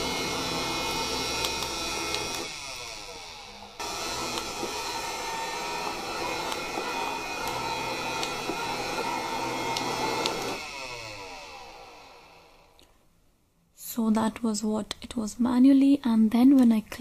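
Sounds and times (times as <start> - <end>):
robot vacuum motor hum: 0.0 - 12.8.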